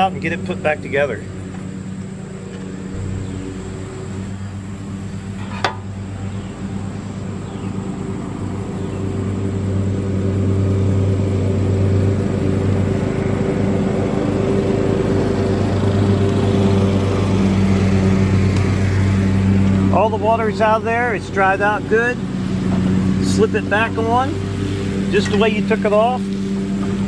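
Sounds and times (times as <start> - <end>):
motor humming: 2.0 - 6.5.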